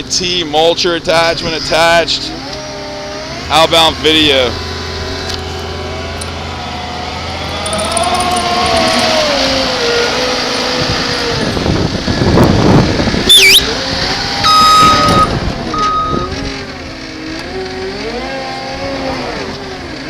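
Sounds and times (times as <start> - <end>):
skid steer engine running: 0.0 - 20.0
high swooping squeal: 13.3 - 13.7
steady beeps: 14.4 - 16.4.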